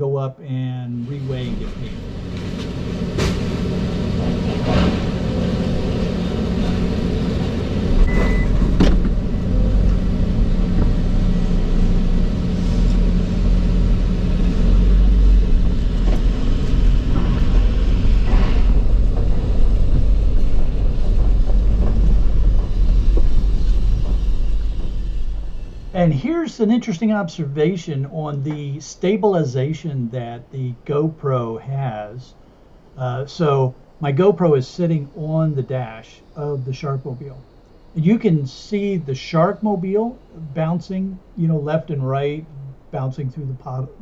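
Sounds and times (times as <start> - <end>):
heavy low rumble: 0.8 - 44.0
vehicle engine running: 1.0 - 28.7
vehicle knocks and rattles: 1.3 - 26.2.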